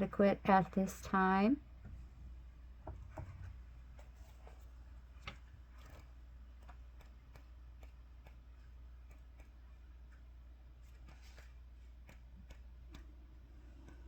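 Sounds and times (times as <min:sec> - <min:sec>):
low steady hum: 0:00.0 - 0:14.0
cards and paper clicking: 0:05.2 - 0:10.2.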